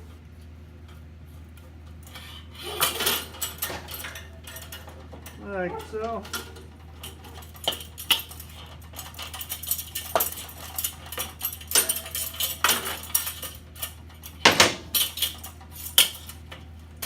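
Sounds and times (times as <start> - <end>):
small metal parts clinking: 2.6 - 16.7.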